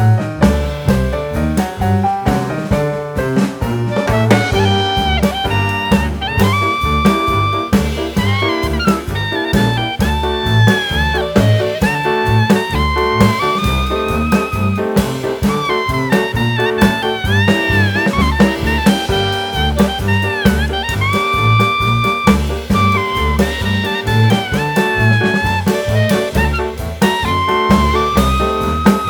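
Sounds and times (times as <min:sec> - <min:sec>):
drums: 0:00.0 - 0:29.0
jazz horn melody: 0:00.0 - 0:29.0
stepping bass line: 0:00.0 - 0:29.0.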